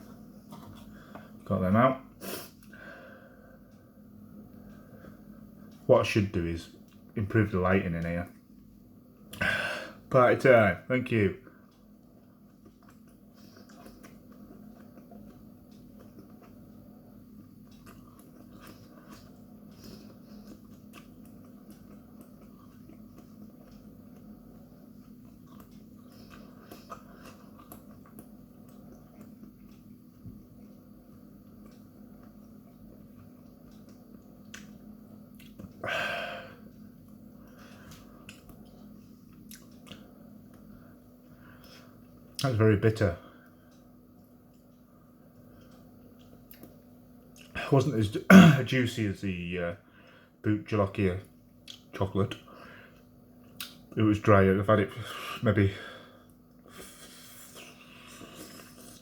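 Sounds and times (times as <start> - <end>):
steady low hum: 0.0 - 59.0
man chewing with wet mouth clicks: 11.6 - 35.8, 36.6 - 41.0, 43.6 - 47.6, 51.4 - 52.0, 52.9 - 54.0, 56.3 - 59.0
wet mouth clicks chewing: 25.0 - 29.8, 38.2 - 40.6.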